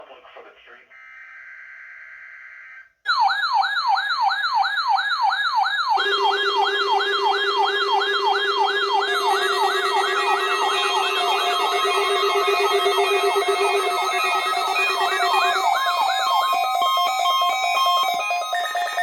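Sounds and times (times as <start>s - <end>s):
steady lower tone: 6.0s - 16.5s
downward sweeping alert tone: 6.0s - 19.0s.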